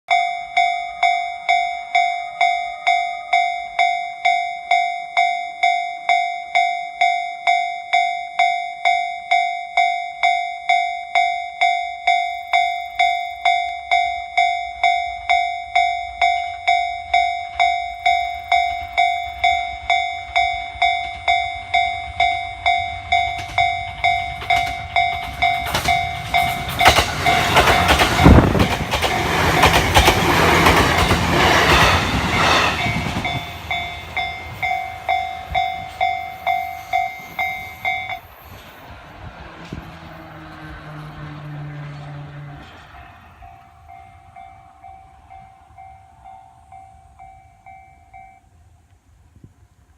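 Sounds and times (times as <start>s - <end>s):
level crossing warning bell: 0.1s - 39.0s, 41.9s - 48.7s
electric train rumble: 0.1s - 49.9s
train wheels clattering on rails: 17.2s - 44.6s.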